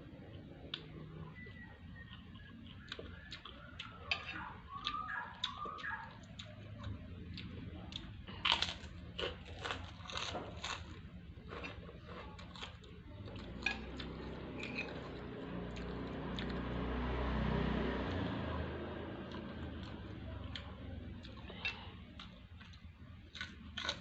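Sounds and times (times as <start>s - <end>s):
wet chewing and mouth smacks: 1.9s - 10.8s.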